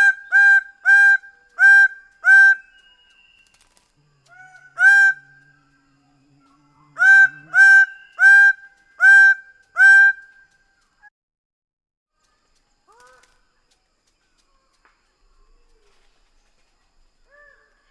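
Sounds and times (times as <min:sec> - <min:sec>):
bird calling: 0:00.0 - 0:10.5.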